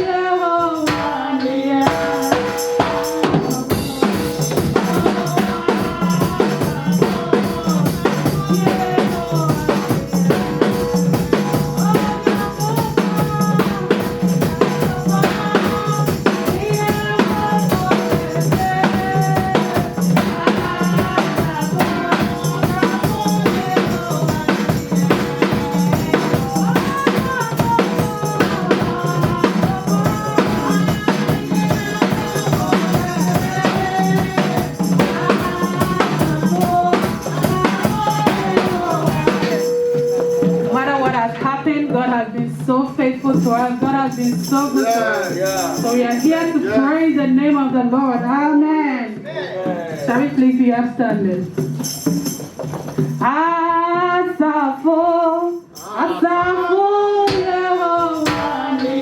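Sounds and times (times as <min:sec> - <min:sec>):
gospel band music: 0:00.0 - 0:54.1, 0:55.1 - 0:59.0
drum kit playing a fast beat: 0:00.7 - 0:47.7, 0:49.6 - 0:53.3, 0:57.3 - 0:59.0
melody instruments: 0:01.5 - 0:05.3, 0:34.3 - 0:41.6.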